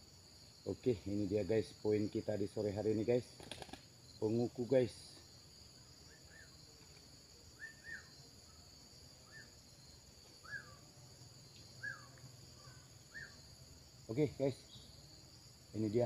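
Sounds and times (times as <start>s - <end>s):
insects shrilling: 0.0s - 16.0s
small bird chirps: 5.8s - 13.6s.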